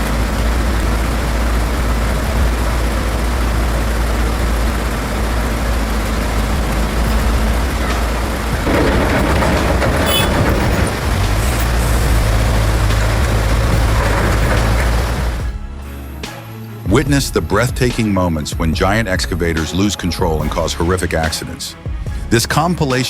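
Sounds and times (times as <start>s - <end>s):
machine clatter: 0.0s - 15.6s
diesel engine rumbling: 0.0s - 23.0s.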